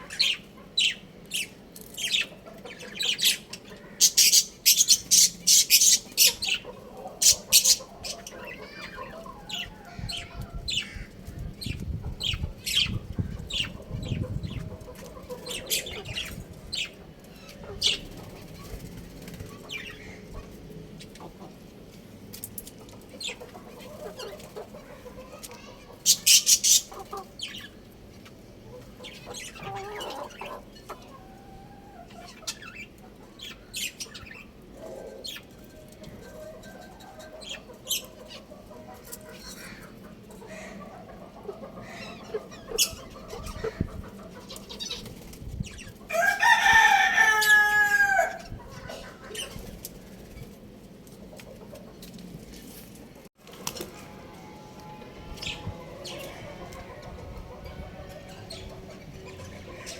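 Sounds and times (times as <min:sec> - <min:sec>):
rooster chirps and clucks: 0:04.1 - 0:11.0, 0:45.8 - 0:49.8
rooster crowing: 0:46.1 - 0:48.5.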